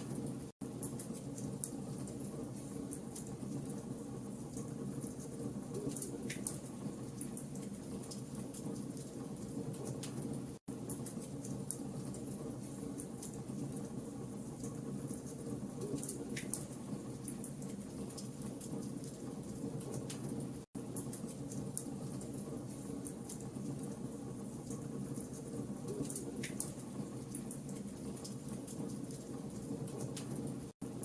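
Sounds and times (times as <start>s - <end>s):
fire crackles and pops: 14.5s - 24.0s, 24.6s - 30.8s.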